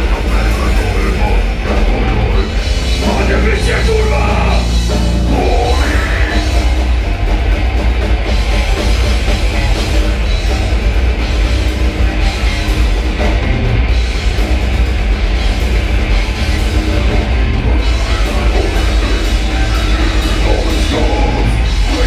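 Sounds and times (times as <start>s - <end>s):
live heavy metal band playing: 0.0s - 22.0s.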